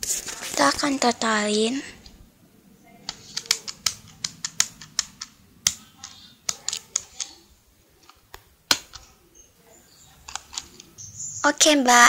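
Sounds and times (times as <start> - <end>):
keypad buttons clicking: 3.1 - 7.4, 10.2 - 11.0.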